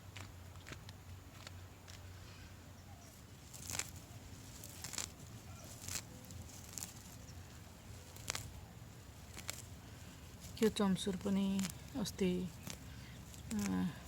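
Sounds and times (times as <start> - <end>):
plants rustling and snapping: 3.1 - 14.0.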